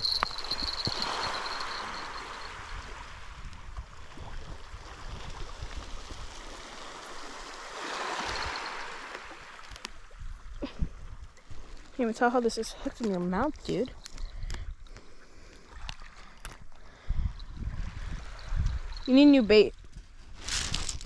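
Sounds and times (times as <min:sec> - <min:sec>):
waves washing onto rocky shore: 0:00.0 - 0:03.4, 0:05.7 - 0:09.9.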